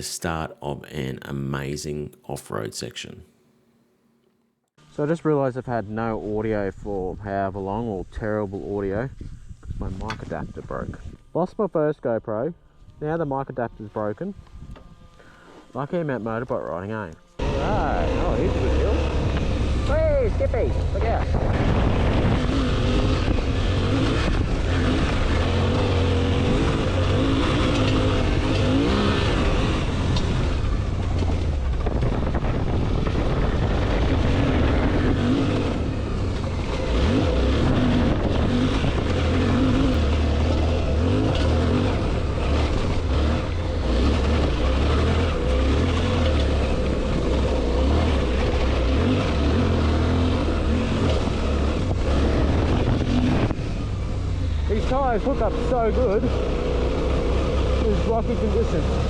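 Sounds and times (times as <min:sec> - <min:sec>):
motorcycle engine revving: 0:17.3 - 0:59.0.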